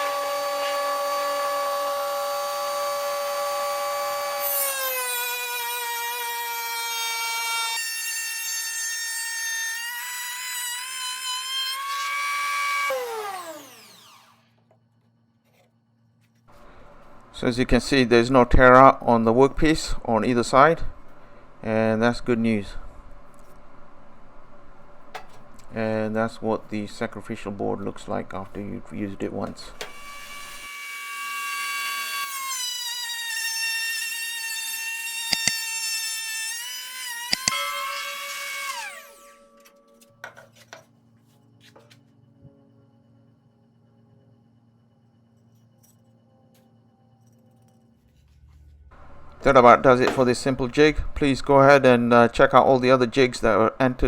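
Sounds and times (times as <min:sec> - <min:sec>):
router motor whining: 0:00.0 - 0:07.8, 0:09.7 - 0:14.6, 0:29.8 - 0:39.4.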